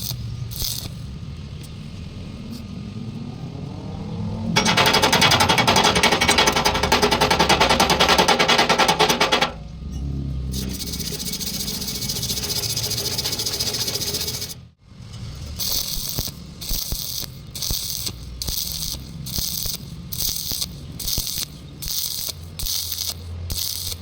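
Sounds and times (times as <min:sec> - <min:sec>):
welding arc crackling: 0:00.0 - 0:01.1, 0:04.6 - 0:09.5, 0:10.5 - 0:14.6, 0:15.4 - 0:24.0.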